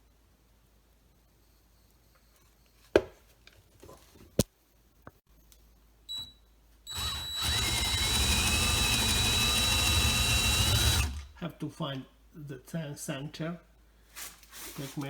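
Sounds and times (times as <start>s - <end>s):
electric drill whining: 6.9s - 11.4s.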